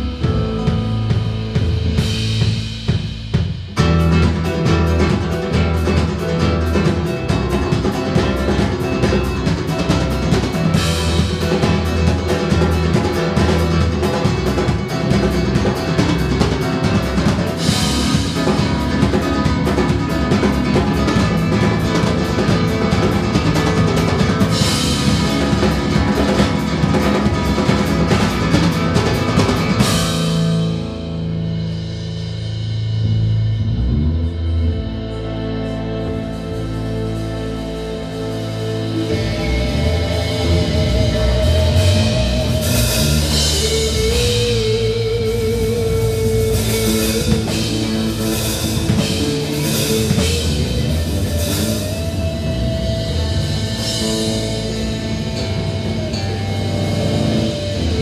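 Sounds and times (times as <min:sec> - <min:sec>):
fast drum-kit playing: 0:00.0 - 0:58.0
low bass notes: 0:00.0 - 0:58.0.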